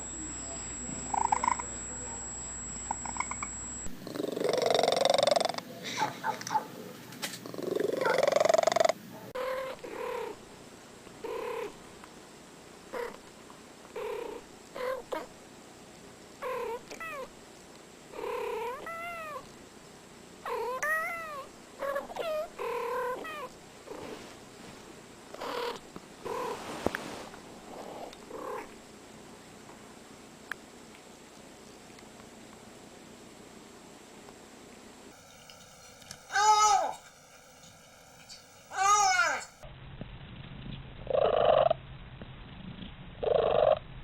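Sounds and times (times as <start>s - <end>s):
loud cat sound: 36.2s - 37.2s, 38.6s - 39.6s.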